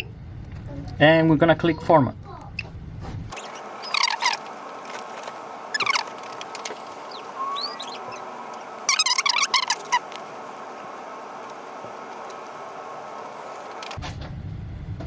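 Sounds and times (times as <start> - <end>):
steady room hum: 0.0 - 15.0
bird chirping: 3.3 - 10.3.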